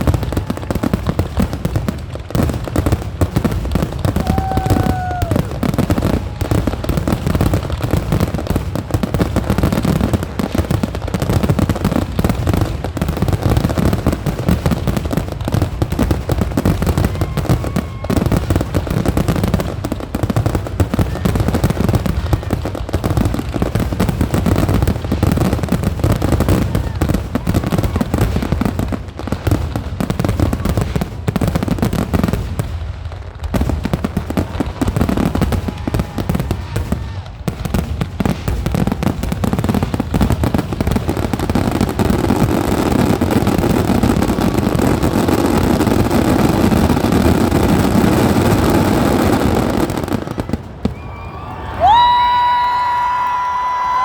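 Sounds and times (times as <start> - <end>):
fireworks bangs and crackling: 0.0 - 54.0
firework whistles: 49.5 - 54.0.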